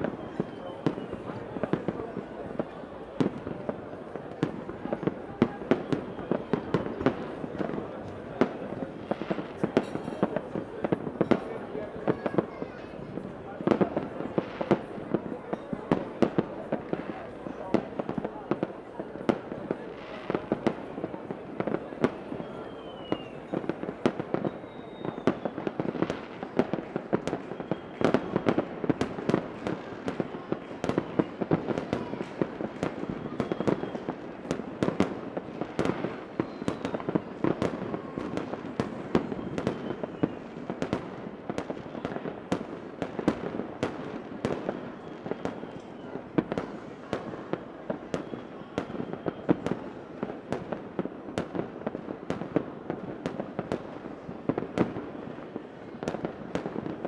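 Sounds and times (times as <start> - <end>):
firework whistles: 0.0 - 1.4, 22.0 - 26.5, 27.2 - 29.0, 32.8 - 34.3, 35.8 - 40.6, 44.6 - 49.8
fireworks bangs and crackling: 0.0 - 57.0.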